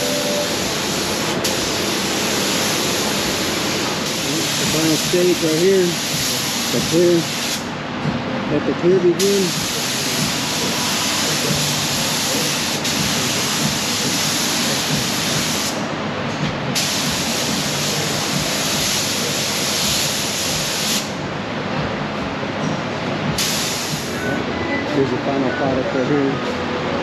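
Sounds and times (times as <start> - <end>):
spray gun hissing: 0.0 - 7.6, 9.2 - 15.8, 16.8 - 21.1, 23.4 - 24.2.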